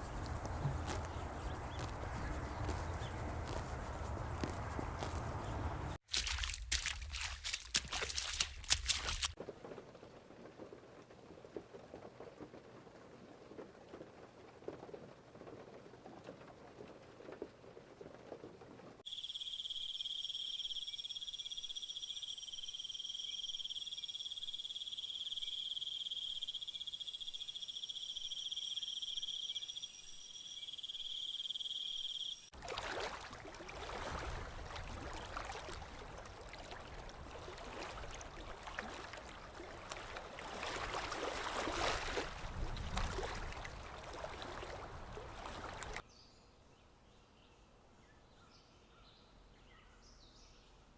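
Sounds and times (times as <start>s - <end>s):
water lapping: 0.0s - 9.4s, 32.6s - 46.0s
rain pattering: 0.0s - 19.0s, 33.7s - 46.0s
crickets and insects trilling: 19.1s - 32.5s.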